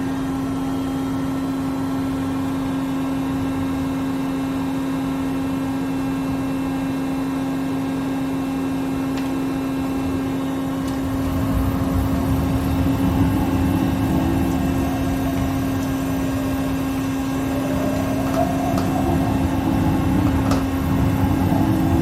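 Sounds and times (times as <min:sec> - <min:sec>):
machine tool humming: 0:09.6 - 0:22.0
low rough rumble: 0:10.5 - 0:22.0.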